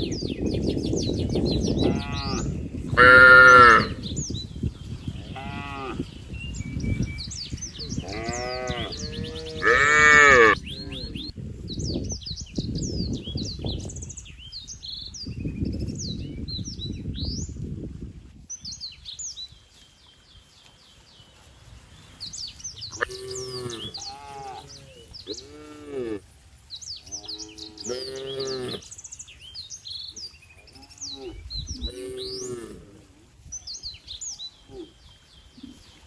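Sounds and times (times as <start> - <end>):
small birds chirping: 0.0 - 17.6, 18.5 - 26.0, 26.7 - 36.0
cattle mooing: 1.8 - 4.0, 8.1 - 11.2, 27.4 - 28.8
low rustling noise: 11.3 - 23.0.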